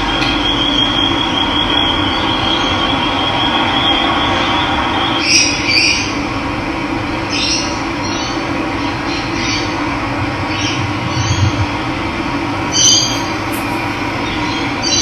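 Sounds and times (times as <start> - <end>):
bird chirps: 12.6 - 15.0.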